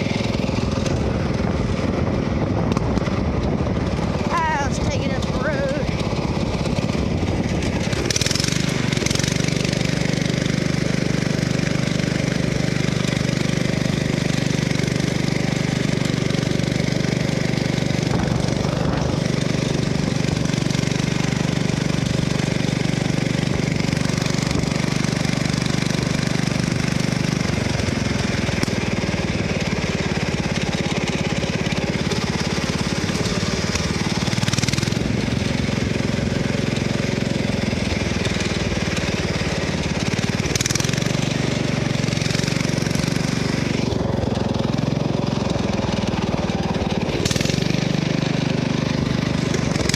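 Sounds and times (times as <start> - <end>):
riding lawn mower engine: 0.0 - 49.9.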